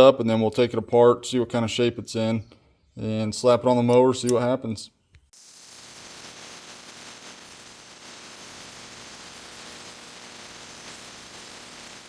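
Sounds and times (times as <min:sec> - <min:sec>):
ultrasonic cleaner hiss: 0:05.4 - 0:12.0.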